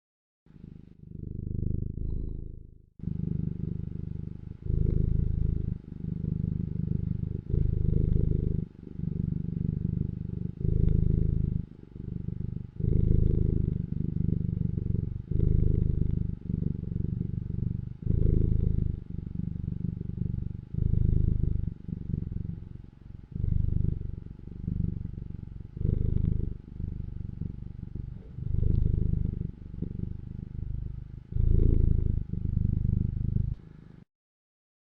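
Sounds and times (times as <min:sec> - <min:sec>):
cat purring: 0:00.5 - 0:34.0.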